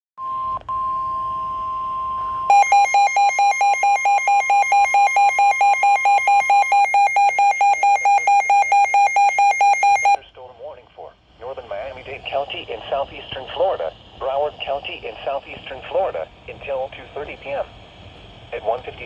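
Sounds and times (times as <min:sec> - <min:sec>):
buzzy pulsing alarm tone: 0:01.5 - 0:10.2.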